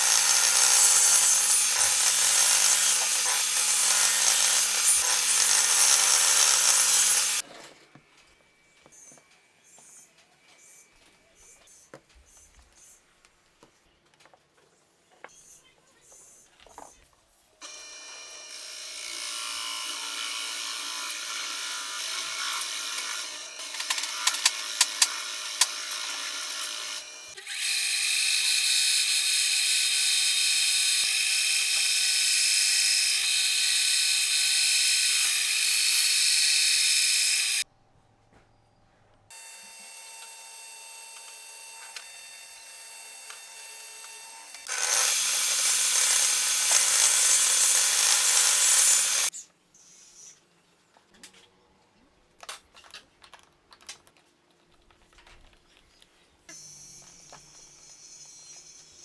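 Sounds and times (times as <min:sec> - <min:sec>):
electric power tools on wood: 0:00.0 - 0:07.4, 0:17.6 - 0:37.6, 0:39.3 - 0:49.3, 0:56.5 - 0:59.0.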